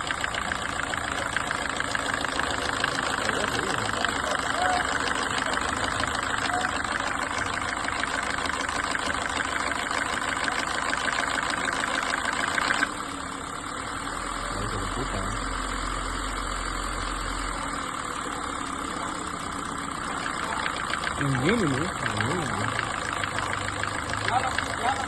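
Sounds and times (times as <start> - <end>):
car engine running with abnormal noise: 0.0 - 25.0.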